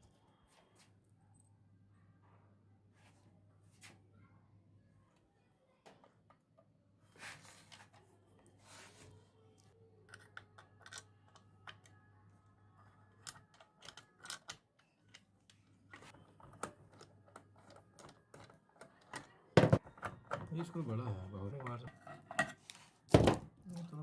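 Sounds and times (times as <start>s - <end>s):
small hard parts clicking: 10.1s - 11.9s, 13.2s - 20.8s.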